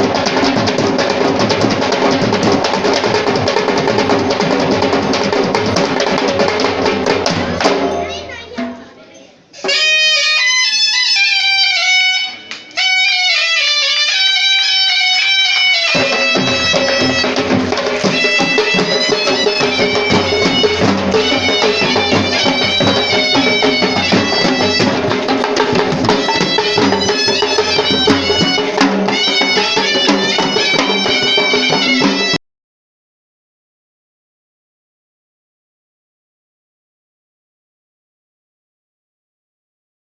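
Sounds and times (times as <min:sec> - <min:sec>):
drums playing: 0:00.0 - 0:09.0, 0:15.0 - 0:32.4
reedy wind instrument melody: 0:09.6 - 0:32.4.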